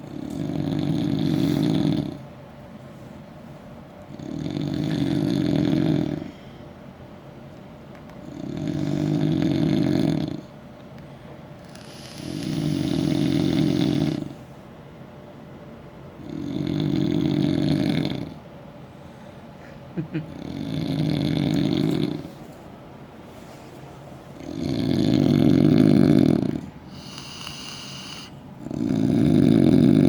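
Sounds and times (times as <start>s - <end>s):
man snoring loudly: 0.4s - 2.2s, 4.2s - 6.3s, 8.3s - 10.4s, 11.8s - 14.3s, 16.2s - 18.4s, 20.3s - 22.3s, 24.4s - 30.0s.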